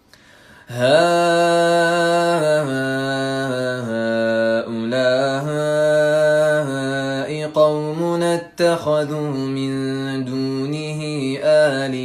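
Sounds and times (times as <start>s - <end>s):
man chanting melodically: 0.7s - 12.0s.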